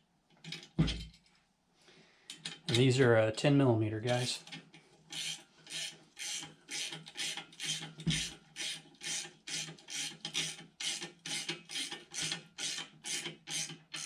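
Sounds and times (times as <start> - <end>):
ratchet wrench rasping: 5.1 - 13.7.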